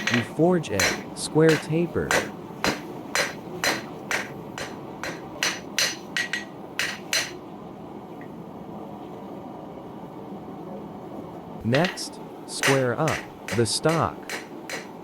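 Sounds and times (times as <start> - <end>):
hammer striking metal on anvil: 0.0 - 7.4, 11.8 - 12.0, 12.6 - 15.0.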